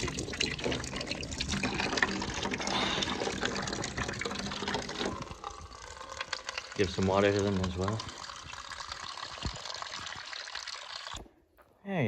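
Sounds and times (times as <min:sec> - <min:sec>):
tap water splashing into container: 0:06.3 - 0:11.4.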